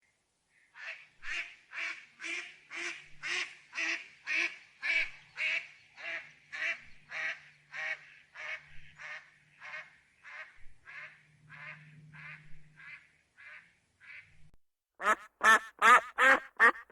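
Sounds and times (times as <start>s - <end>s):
duck quacking: 15.0s - 16.9s.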